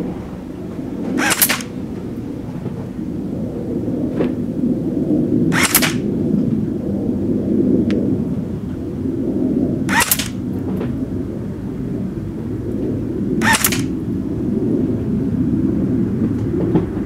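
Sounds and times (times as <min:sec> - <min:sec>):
gearbox whine: 0:00.0 - 0:02.9, 0:05.5 - 0:06.1, 0:09.9 - 0:10.9, 0:13.4 - 0:14.1
low rumble: 0:00.0 - 0:17.0
airsoft rifle shots: 0:01.2 - 0:01.8, 0:05.5 - 0:06.1, 0:09.9 - 0:10.4, 0:13.4 - 0:14.0.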